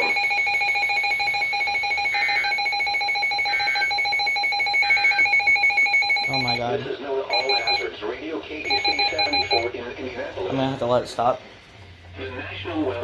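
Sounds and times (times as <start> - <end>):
steady electronic alarm tone: 0.0 - 7.9, 8.6 - 9.7.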